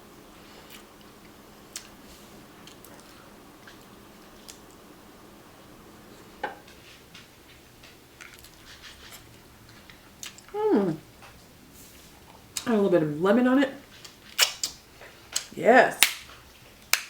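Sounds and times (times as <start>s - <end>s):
chewing: 0.6s - 2.0s, 2.6s - 4.8s, 7.2s - 11.4s.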